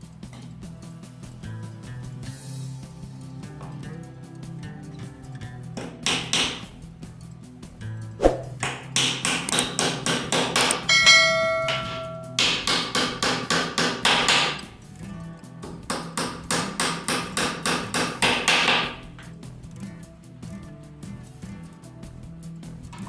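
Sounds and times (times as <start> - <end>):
hammer striking rapidly: 8.2 - 14.6, 16.0 - 19.0
ringing tone: 10.9 - 12.4.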